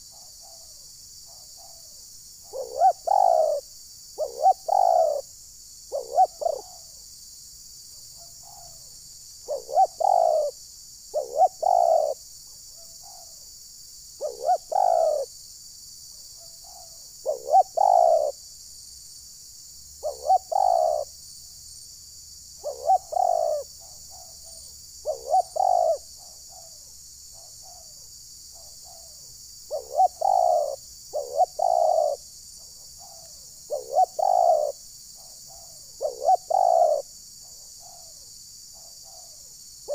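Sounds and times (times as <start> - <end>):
doves cooing: 2.5 - 5.3, 5.9 - 6.9, 9.5 - 10.5, 11.1 - 12.2, 14.2 - 15.3, 16.7 - 18.4, 20.0 - 21.1, 22.6 - 26.7, 29.7 - 32.2, 33.0 - 38.2.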